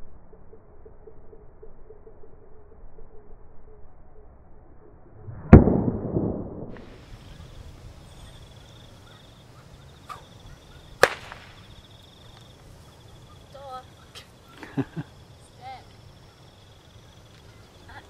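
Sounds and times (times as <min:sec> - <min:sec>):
rolling echo: 0:09.0 - 0:12.7
whip cracks: 0:11.0 - 0:11.7.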